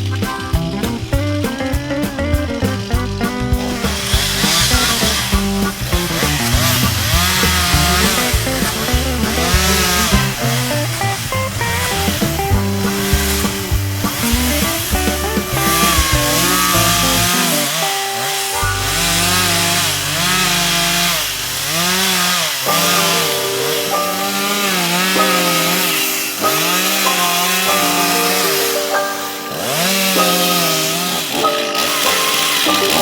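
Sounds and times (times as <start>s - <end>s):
background music: 0.0s - 33.0s
chainsaw cutting into tree trunk: 0.0s - 33.0s.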